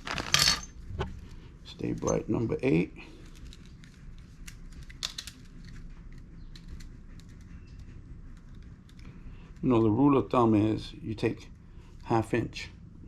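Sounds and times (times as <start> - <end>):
small handling noises: 0.0 - 9.7.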